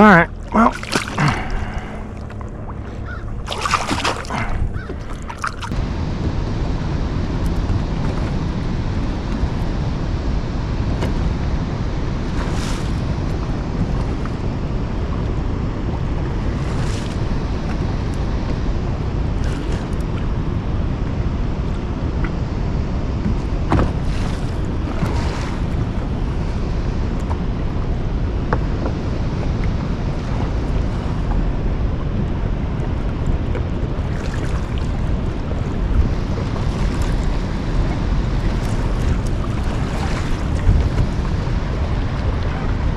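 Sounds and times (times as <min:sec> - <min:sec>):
splashes: 0:00.0 - 0:05.8, 0:34.0 - 0:42.9
water noise: 0:00.0 - 0:42.9
wind buffeting microphone: 0:00.0 - 0:42.9.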